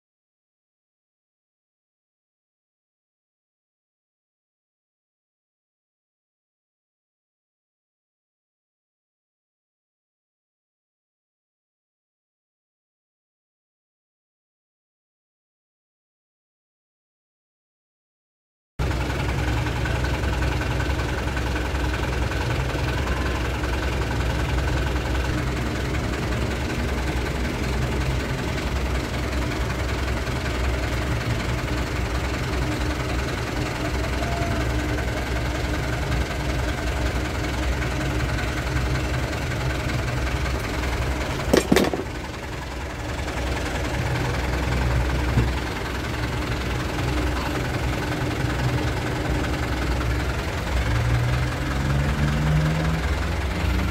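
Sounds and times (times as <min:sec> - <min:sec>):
diesel truck engine idling: 0:18.8 - 0:53.9.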